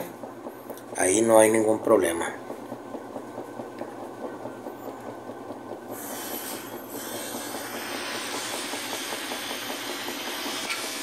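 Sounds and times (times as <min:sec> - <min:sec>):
washing machine spin rattle: 0:00.0 - 0:11.0.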